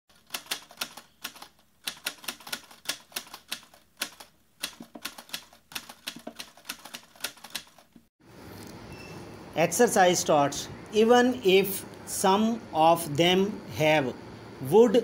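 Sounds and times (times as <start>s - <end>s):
typewriter keys clacking: 0.1s - 8.0s.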